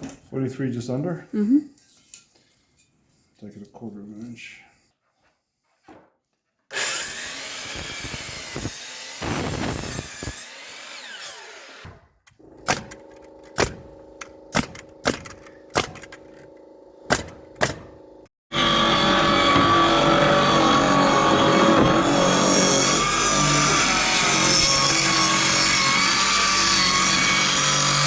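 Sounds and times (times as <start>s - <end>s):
power saw cutting wood: 6.7s - 28.0s.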